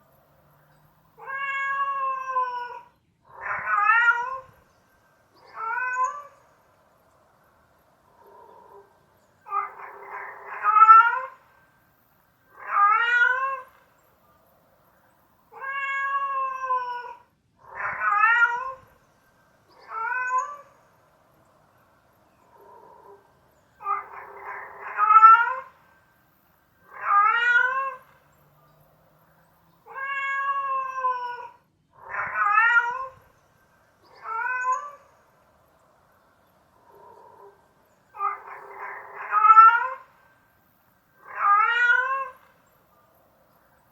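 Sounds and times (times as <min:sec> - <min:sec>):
cat meowing: 0:01.2 - 0:04.7, 0:05.4 - 0:06.6, 0:08.2 - 0:11.6, 0:12.5 - 0:13.9, 0:15.5 - 0:19.0, 0:19.7 - 0:20.8, 0:23.8 - 0:26.0, 0:26.8 - 0:28.6, 0:29.8 - 0:33.4, 0:34.0 - 0:35.2, 0:36.8 - 0:40.4, 0:41.2 - 0:42.7.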